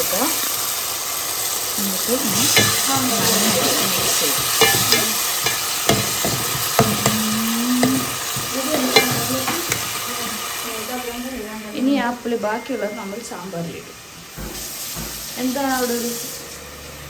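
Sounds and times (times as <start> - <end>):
vegetables sizzling in a pan: 0.0 - 17.0
spoon scraping against pan: 2.3 - 10.6.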